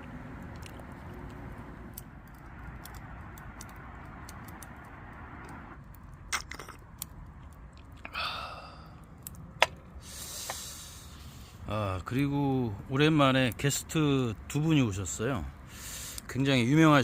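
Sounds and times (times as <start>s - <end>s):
charcoal fire crackling: 0.0s - 17.0s
steady hiss: 10.0s - 12.0s, 15.6s - 16.5s.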